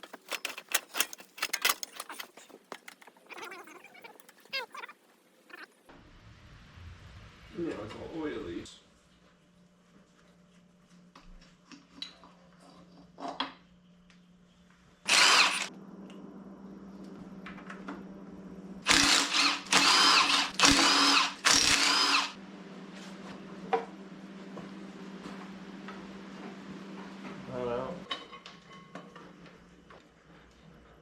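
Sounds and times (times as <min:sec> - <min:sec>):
power tool running in bursts: 0:15.1 - 0:15.7, 0:18.9 - 0:22.4.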